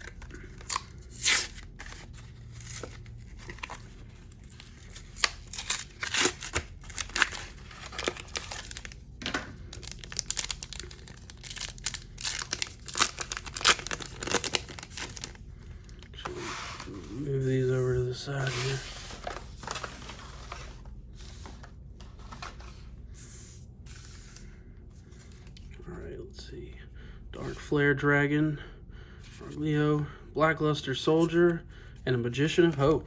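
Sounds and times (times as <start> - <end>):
packaging tearing and crinkling: 0.0 - 9.0, 9.6 - 15.4.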